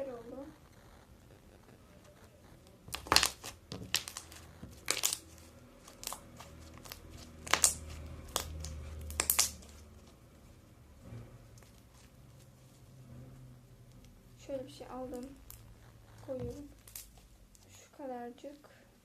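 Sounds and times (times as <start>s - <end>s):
slime crackling pops: 2.9s - 9.7s.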